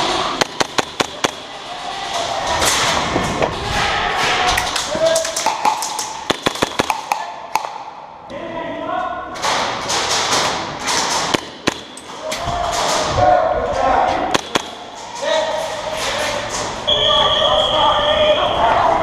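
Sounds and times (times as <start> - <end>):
pellets striking walls: 0.3 - 1.6, 3.7 - 7.9, 9.4 - 13.2, 14.2 - 15.2
airsoft gunshots snapping: 5.4 - 7.8, 11.2 - 12.0, 14.3 - 14.8.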